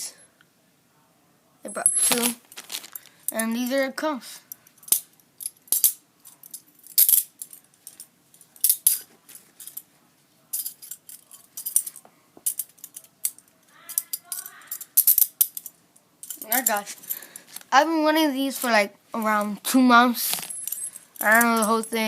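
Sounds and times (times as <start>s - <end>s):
metal handcuffs clinking: 4.5s - 9.9s, 10.5s - 17.6s, 20.2s - 22.0s.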